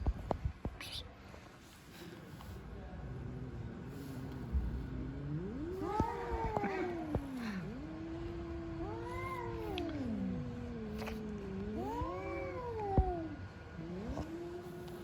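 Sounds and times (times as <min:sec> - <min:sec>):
cats yowling in a fight: 0:05.2 - 0:15.0.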